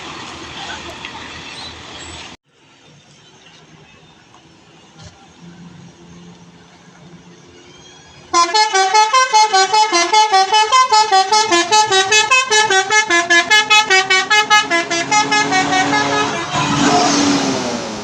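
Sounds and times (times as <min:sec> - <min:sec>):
musical bus horn playing a tune: 0:08.3 - 0:17.7.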